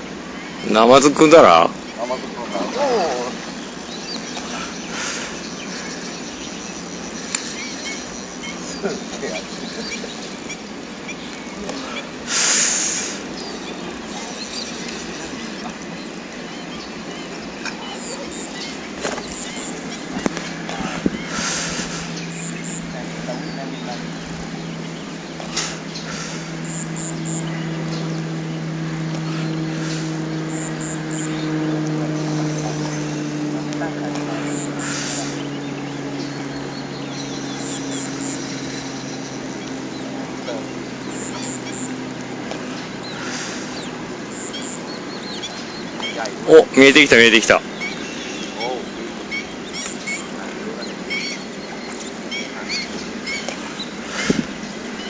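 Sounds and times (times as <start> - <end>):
low machine hum: 0.0 - 55.0
outdoor background noise: 0.0 - 55.0
small birds chirping: 0.0 - 55.0
outdoor hiss: 11.4 - 16.1, 43.1 - 43.8.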